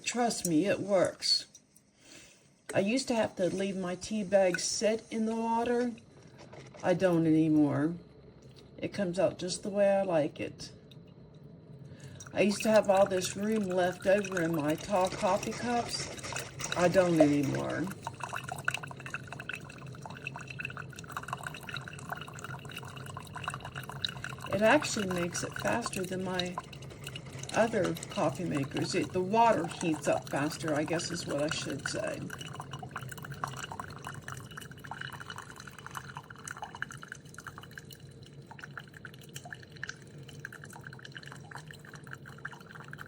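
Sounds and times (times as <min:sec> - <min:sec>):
low machine hum: 0:02.6 - 0:43.0
tea dripping and splashing into cup: 0:10.7 - 0:43.0.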